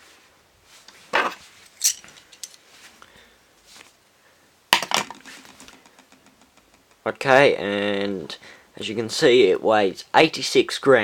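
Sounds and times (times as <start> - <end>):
carabiner clinking: 1.3 - 2.6.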